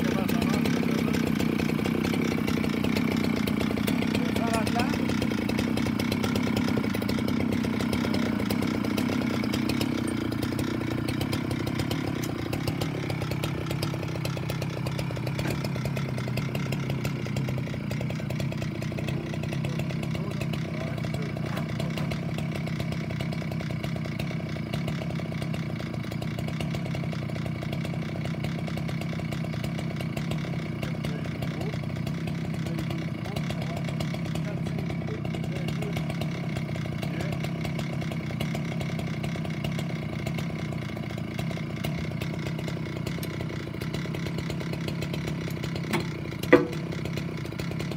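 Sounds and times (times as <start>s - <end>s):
chainsaw cutting wood: 0.0s - 47.9s.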